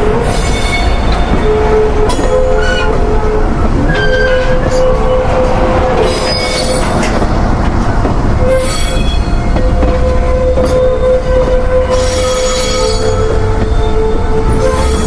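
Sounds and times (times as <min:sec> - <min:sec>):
train rumble: 0:00.0 - 0:15.0
train wheels squealing: 0:06.0 - 0:07.1, 0:08.4 - 0:14.0, 0:14.6 - 0:15.0.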